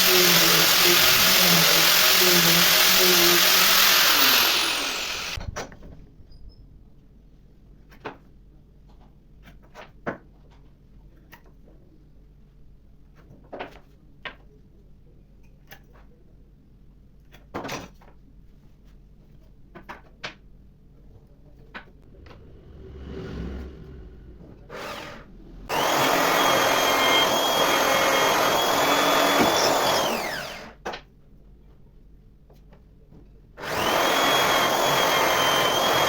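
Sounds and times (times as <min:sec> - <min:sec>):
power tool motor whining: 0:00.0 - 0:05.4, 0:24.7 - 0:30.8, 0:33.6 - 0:36.0.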